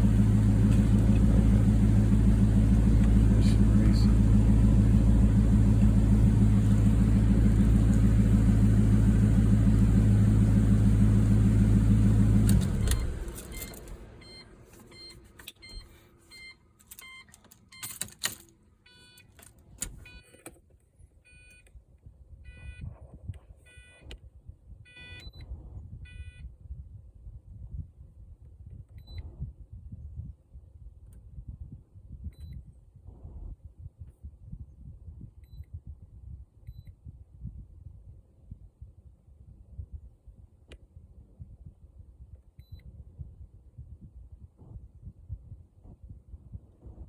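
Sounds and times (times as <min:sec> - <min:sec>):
car engine idling: 0:00.0 - 0:15.0
clicks: 0:12.3 - 0:14.0.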